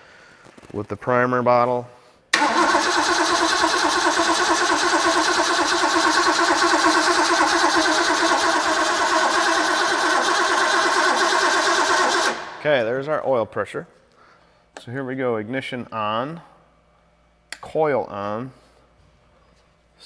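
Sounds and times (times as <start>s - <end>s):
engine cranked by starter: 2.4s - 12.7s.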